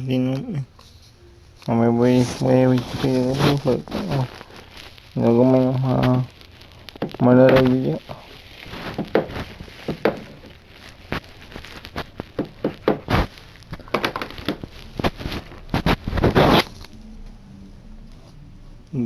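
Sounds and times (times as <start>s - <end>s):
packaging crinkling and rustling: 0.8s - 17.1s.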